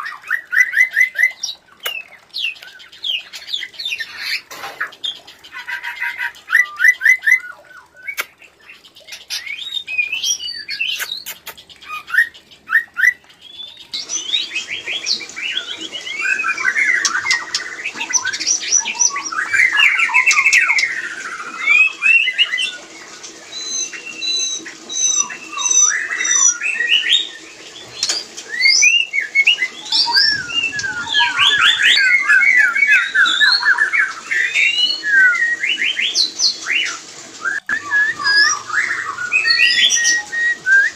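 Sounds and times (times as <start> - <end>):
birds whistling song: 0.0 - 40.9.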